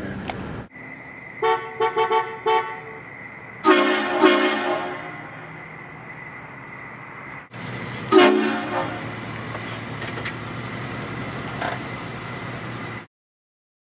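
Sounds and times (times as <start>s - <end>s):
train air horn blast: 3.6s - 5.3s, 8.0s - 9.2s.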